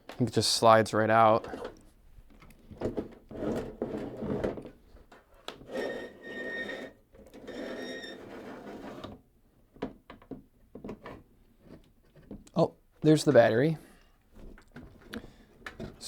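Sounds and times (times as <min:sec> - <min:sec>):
metal scraping with faint squeal: 0:05.7 - 0:09.1.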